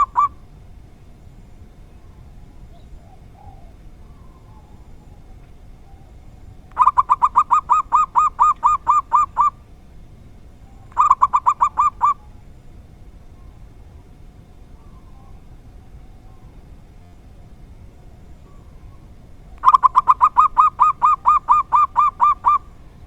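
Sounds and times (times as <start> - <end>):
dove cooing: 0.0 - 0.6, 1.9 - 9.8, 10.6 - 12.6, 13.2 - 23.0.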